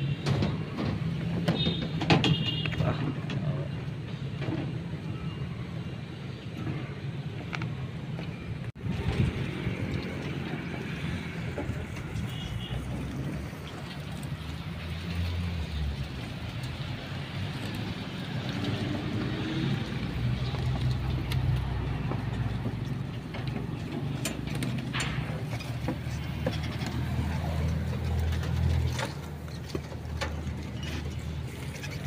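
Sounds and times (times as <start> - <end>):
clicks and knocks: 21.4 - 31.2.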